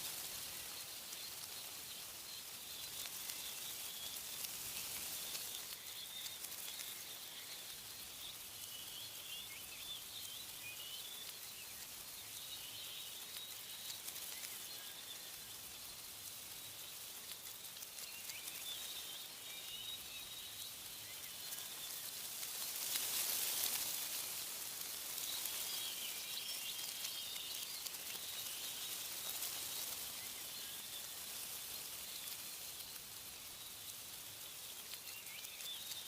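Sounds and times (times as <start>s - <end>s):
small birds chirping: 0.0s - 36.0s
wind in tree leaves: 0.0s - 36.0s.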